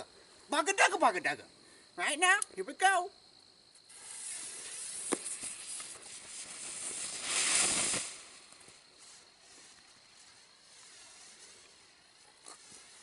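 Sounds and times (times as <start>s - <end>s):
firework hissing: 3.7s - 13.0s.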